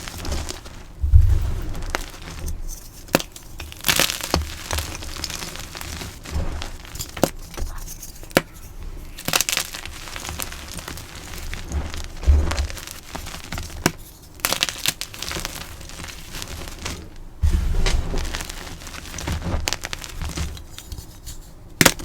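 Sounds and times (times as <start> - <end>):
chalk crunching and cracking: 0.0 - 22.0
dull low thumps: 1.0 - 2.2.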